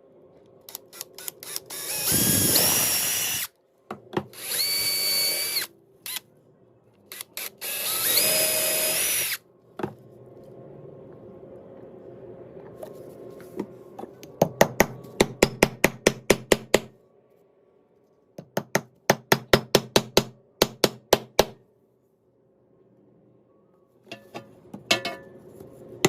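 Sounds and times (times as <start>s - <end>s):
power drill running: 0.9s - 3.5s, 4.3s - 6.2s, 7.1s - 9.4s.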